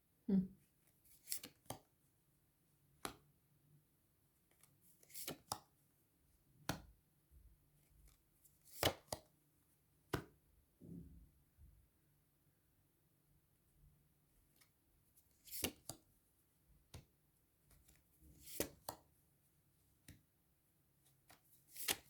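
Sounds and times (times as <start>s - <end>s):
cards snapping and clicking: 1.2s - 1.9s, 3.0s - 3.3s, 4.5s - 5.6s, 6.6s - 6.9s, 8.7s - 9.3s, 15.4s - 16.0s, 18.4s - 19.0s, 21.3s - 22.0s.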